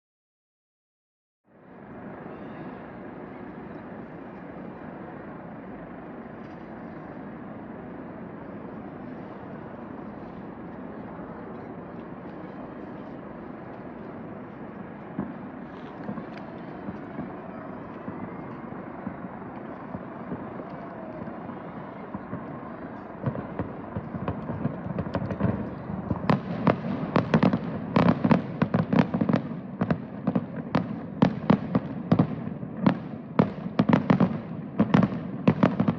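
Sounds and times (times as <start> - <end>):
outdoor background din: 1.5 - 35.9
fireworks bangs: 7.2 - 35.9.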